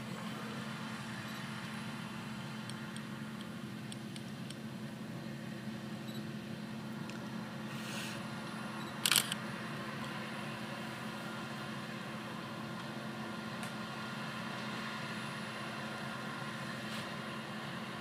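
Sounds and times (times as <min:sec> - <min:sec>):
combine harvester engine hum: 0:00.0 - 0:18.0.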